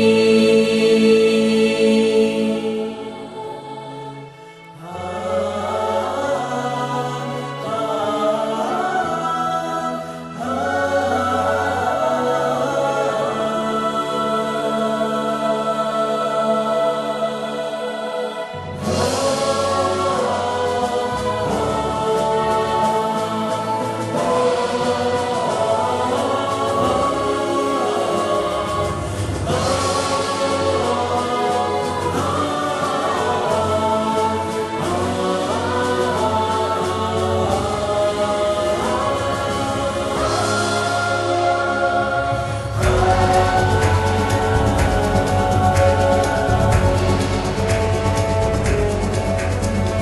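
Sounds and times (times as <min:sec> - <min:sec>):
choir-like voices holding chords: 0:00.0 - 0:50.0
bass line: 0:37.5 - 0:50.0.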